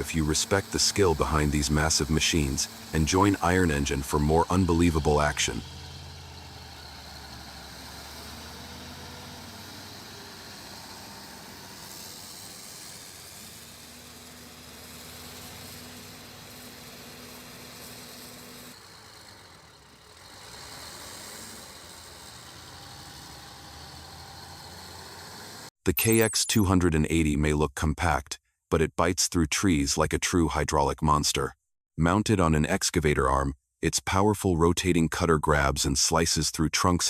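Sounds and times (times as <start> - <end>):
heavy machine engine running: 1.0 - 3.6.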